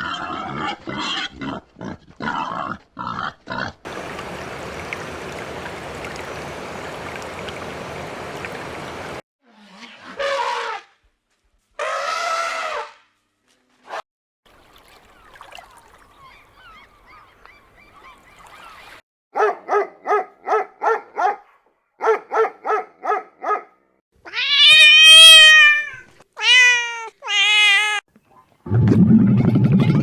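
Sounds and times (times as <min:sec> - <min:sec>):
cat meowing: 0:24.3 - 0:28.0.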